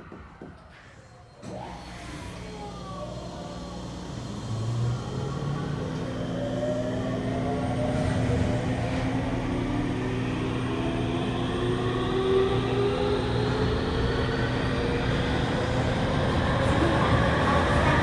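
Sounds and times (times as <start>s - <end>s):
train motors whining: 0.1s - 18.0s
wheels rumbling on rails: 5.0s - 18.0s.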